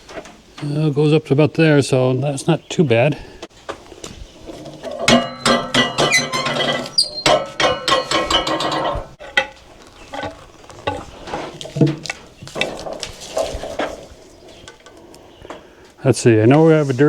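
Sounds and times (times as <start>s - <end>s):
metallic clinks and clanks: 4.6s - 9.6s
knocks: 4.9s - 9.6s.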